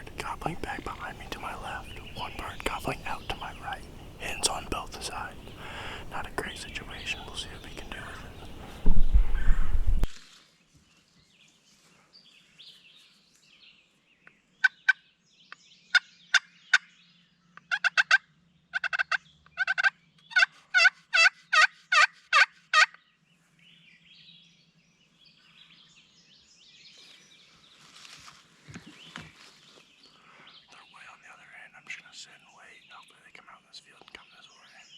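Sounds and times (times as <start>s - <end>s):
turkey call yelps: 17.7s - 18.2s, 18.8s - 23.0s.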